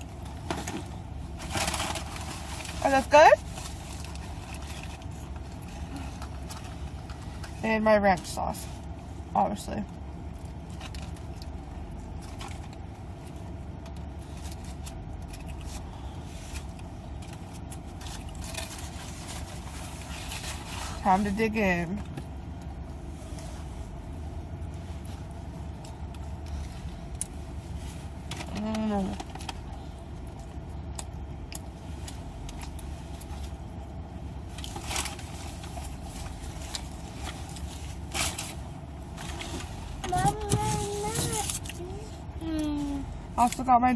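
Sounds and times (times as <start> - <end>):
steady low hum: 0.0 - 43.9
steady low rumble: 0.0 - 43.9
paper wrapping rustling: 34.6 - 42.0.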